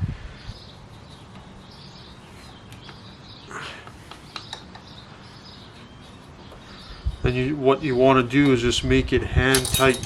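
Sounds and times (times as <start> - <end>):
faint birds chirping: 0.0 - 9.2.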